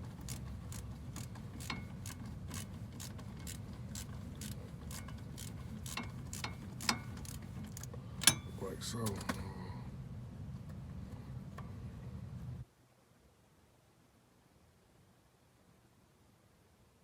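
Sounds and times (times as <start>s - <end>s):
socket ratchet clicking: 0.2s - 8.5s.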